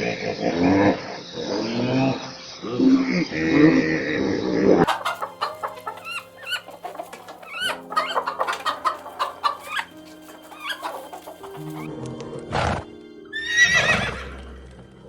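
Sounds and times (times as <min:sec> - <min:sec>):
chickens clucking: 0:04.8 - 0:12.8
soft piano music: 0:04.8 - 0:15.0.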